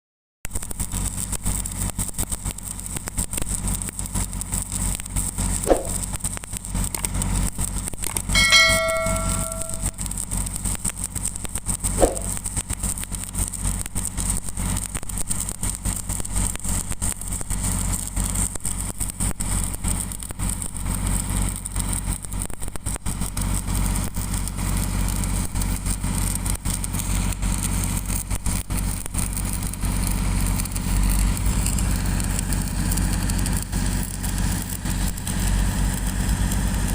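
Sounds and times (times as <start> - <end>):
welding arc crackling: 0.5 - 36.9
metallic ring: 8.3 - 10.1, 12.0 - 12.3.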